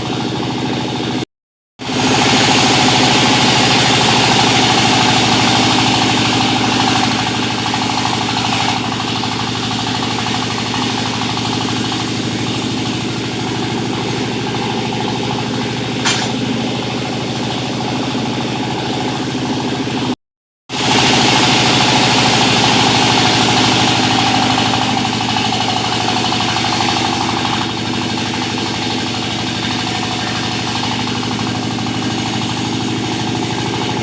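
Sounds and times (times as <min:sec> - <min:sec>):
sawmill engine drone: 0:01.8 - 0:34.0
sharp click: 0:16.0 - 0:16.4.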